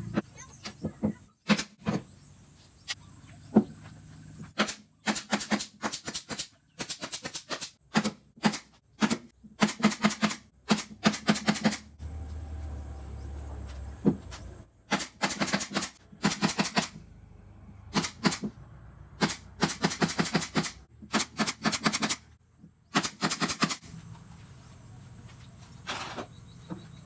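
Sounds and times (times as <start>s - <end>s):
bursts of sharp knocks: 14.9s - 17.0s, 22.9s - 23.8s.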